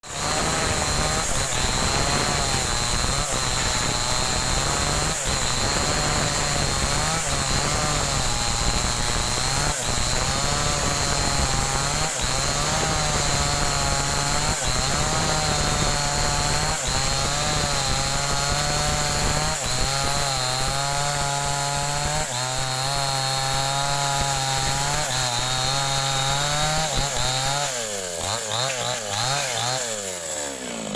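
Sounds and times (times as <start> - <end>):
chainsaw sputtering unevenly: 0.0 - 30.9.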